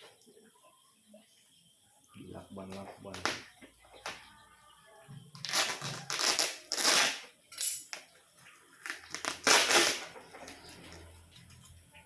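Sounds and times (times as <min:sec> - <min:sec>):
packing tape tearing off parcel: 0:05.3 - 0:07.3, 0:08.8 - 0:10.6.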